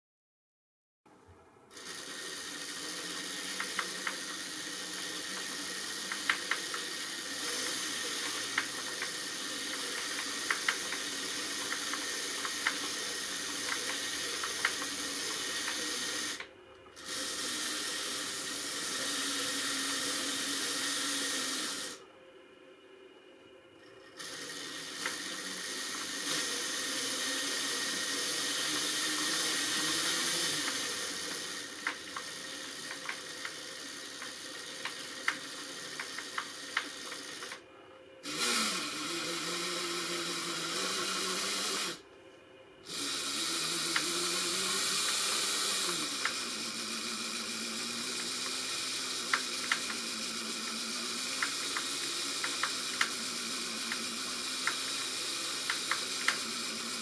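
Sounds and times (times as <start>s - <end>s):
electric motor whine: 1.7s - 22.2s, 23.0s - 42.1s, 42.8s - 57.0s
gearbox clacking: 5.2s - 16.5s.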